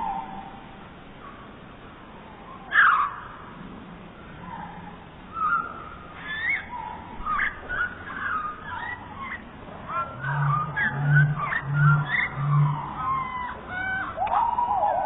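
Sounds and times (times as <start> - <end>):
swooping whistled notes: 0.0 - 0.8, 5.3 - 15.0
slowed-down bird calls: 0.0 - 15.0.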